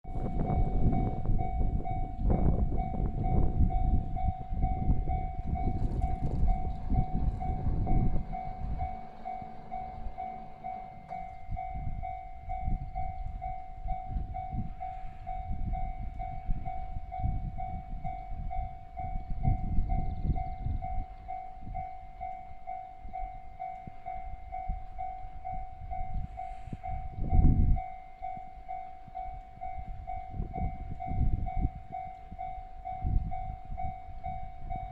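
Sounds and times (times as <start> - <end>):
low rumble: 0.1 - 21.0
level crossing bell ringing: 0.6 - 26.2.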